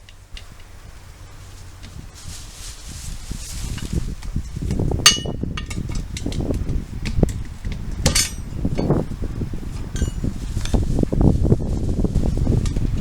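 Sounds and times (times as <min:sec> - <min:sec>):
metal tools clinking on wheel: 0:08.1 - 0:09.0, 0:10.0 - 0:10.8.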